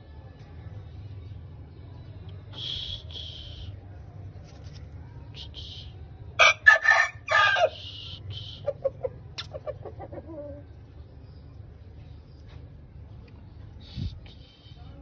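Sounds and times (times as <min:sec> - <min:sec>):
rooster crowing: 0:06.4 - 0:07.8.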